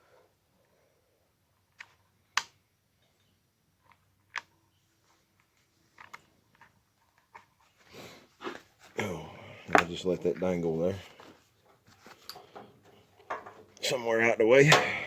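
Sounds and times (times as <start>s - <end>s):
rifle handling clicks and knocks: 5.4s - 7.6s, 11.1s - 13.8s.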